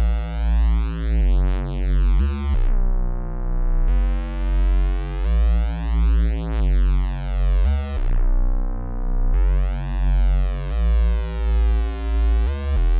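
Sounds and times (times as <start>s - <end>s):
dark synthesizer bassline: 0.0s - 12.9s.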